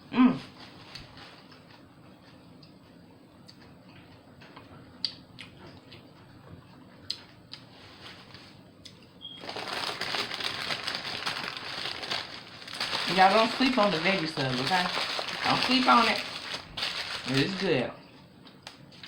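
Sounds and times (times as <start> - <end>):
quiet chewing: 1.5 - 7.7.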